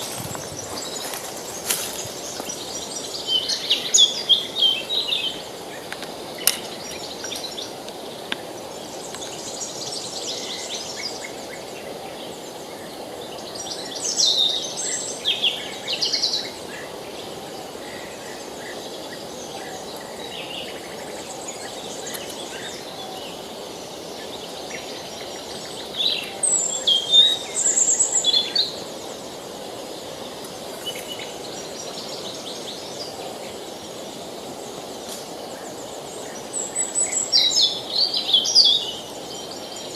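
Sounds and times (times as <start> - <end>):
river rushing: 0.0 - 12.0
birds singing and chirping: 0.0 - 39.9.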